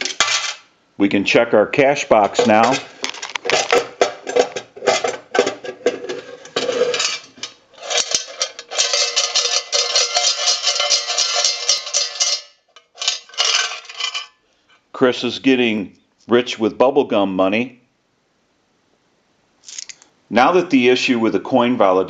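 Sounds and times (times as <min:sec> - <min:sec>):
coins clinking in metal box: 0:00.0 - 0:00.6, 0:06.6 - 0:14.3.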